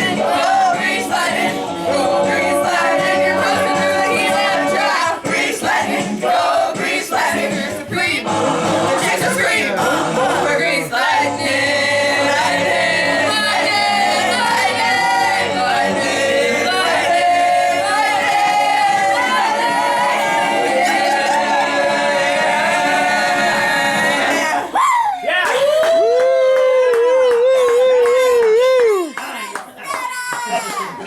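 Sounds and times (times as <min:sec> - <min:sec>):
voices singing held notes: 0:00.0 - 0:24.8.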